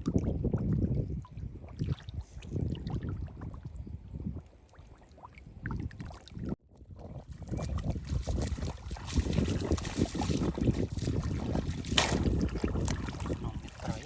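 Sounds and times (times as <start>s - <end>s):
shallow water sloshing and splashing: 4.4s - 14.0s.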